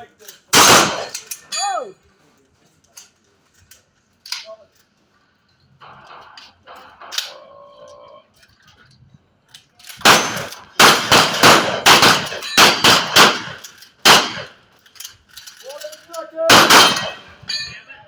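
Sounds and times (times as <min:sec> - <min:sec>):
shotgun shots: 0:00.5 - 0:01.2, 0:10.0 - 0:14.6, 0:16.5 - 0:17.4
steel plate targets clanging: 0:10.0 - 0:14.6, 0:16.5 - 0:18.0.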